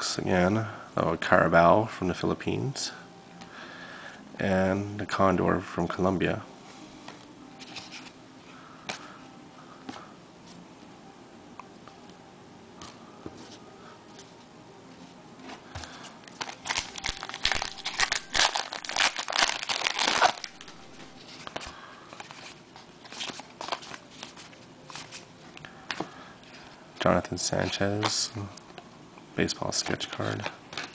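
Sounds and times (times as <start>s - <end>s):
foil wrapper crinkling: 15.8s - 25.2s.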